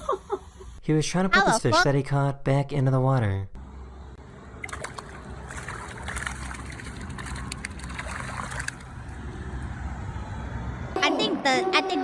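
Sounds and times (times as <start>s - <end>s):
water splashing and sloshing: 4.3s - 9.8s.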